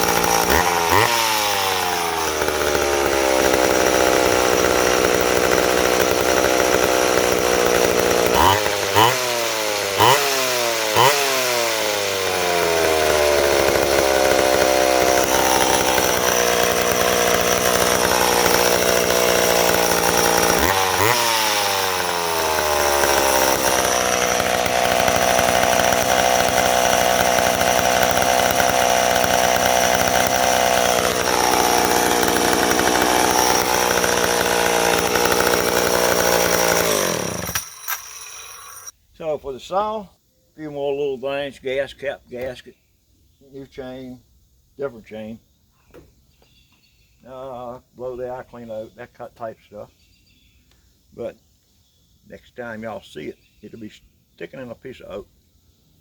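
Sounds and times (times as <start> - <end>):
two-stroke chainsaw engine revving: 0.0 - 38.9.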